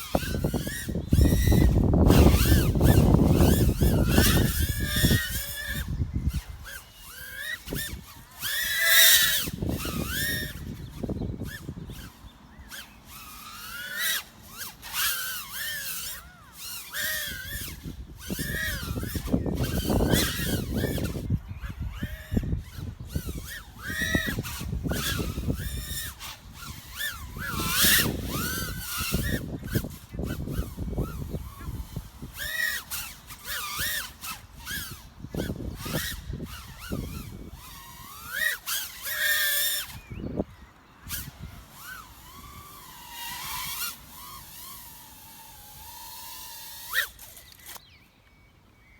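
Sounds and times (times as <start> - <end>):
wind rumble on microphone: 0.0 - 6.8, 9.2 - 12.1, 17.2 - 32.5, 33.6 - 38.4
quadcopter motors whining: 0.0 - 48.9.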